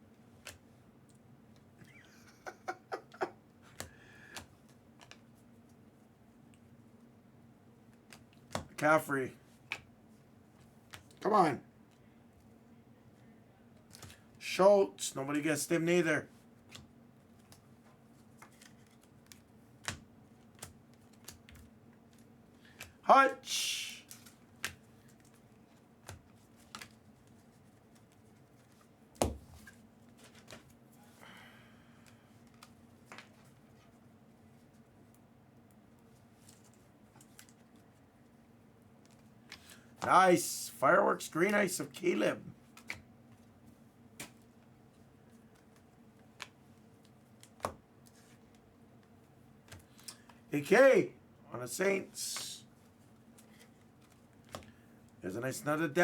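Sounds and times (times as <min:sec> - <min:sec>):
trading cards flipping: 0:18.4 - 0:23.0.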